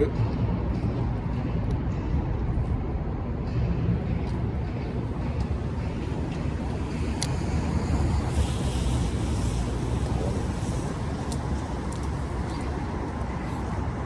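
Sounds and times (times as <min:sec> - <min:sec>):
city road traffic rumble: 0:00.0 - 0:14.0.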